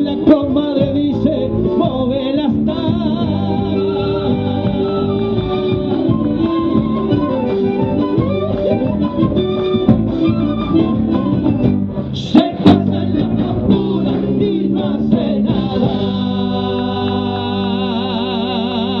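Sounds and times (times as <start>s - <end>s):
folk music on guitars with voices: 0.0s - 19.0s.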